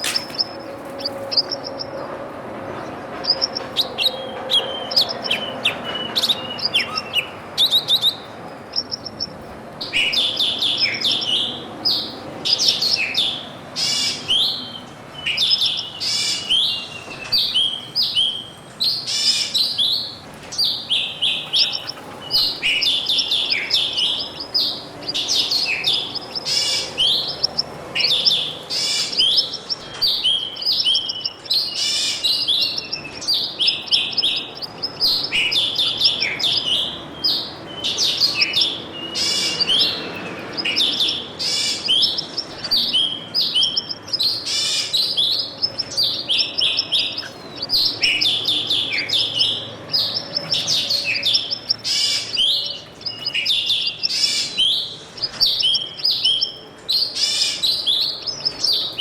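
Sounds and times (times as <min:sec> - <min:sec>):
small birds chirping: 0:00.0 - 0:59.0.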